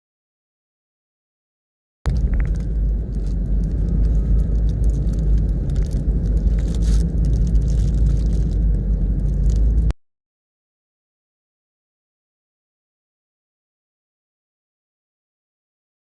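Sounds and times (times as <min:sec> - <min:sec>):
eating clicks and crunches: 0:02.1 - 0:09.9
car road rumble: 0:02.1 - 0:10.0.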